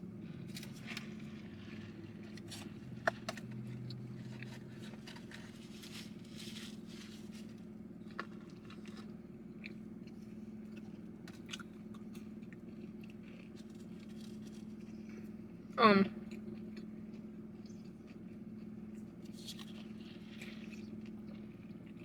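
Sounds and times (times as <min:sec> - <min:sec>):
chewing and crunching food: 0:00.0 - 0:22.0
small clicks and rustles: 0:00.4 - 0:09.1.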